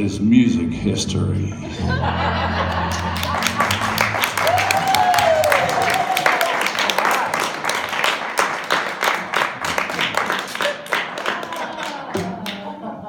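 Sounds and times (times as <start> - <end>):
audience applause: 2.6 - 12.8.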